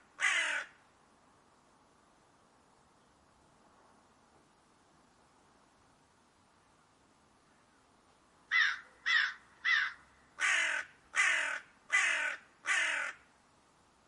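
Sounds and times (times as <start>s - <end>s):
crow cawing: 0.2s - 0.8s, 8.5s - 13.3s.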